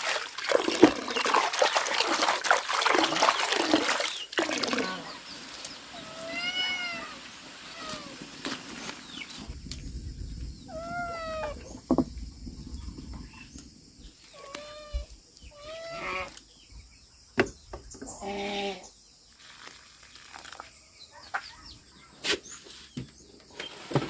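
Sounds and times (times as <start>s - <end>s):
animal crying: 6.0s - 8.2s, 10.7s - 11.7s, 14.4s - 16.4s.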